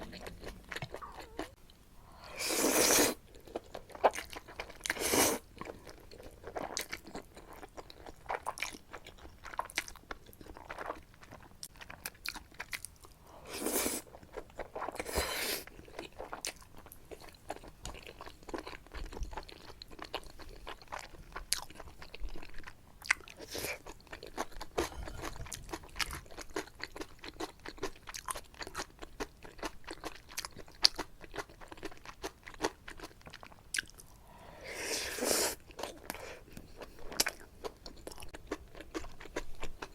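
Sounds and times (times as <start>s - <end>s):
slurping noodles: 2.3s - 3.2s
wet chewing and mouth clicks: 3.3s - 13.2s, 14.1s - 34.1s, 35.6s - 39.9s.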